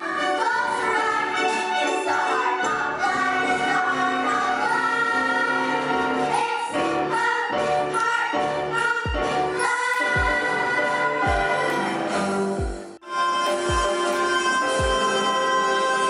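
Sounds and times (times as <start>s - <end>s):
voices singing over instruments: 0.0s - 16.0s
deep kick drum beat: 10.2s - 10.4s, 11.3s - 11.5s, 12.6s - 12.9s.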